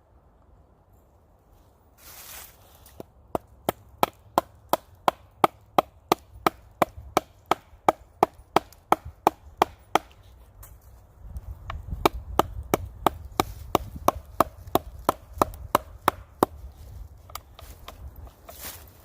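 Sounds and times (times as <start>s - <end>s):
rustle: 0.0s - 3.0s, 13.3s - 14.0s, 16.5s - 19.0s
wooden baton knocking on wood: 11.6s - 16.6s, 17.2s - 18.4s.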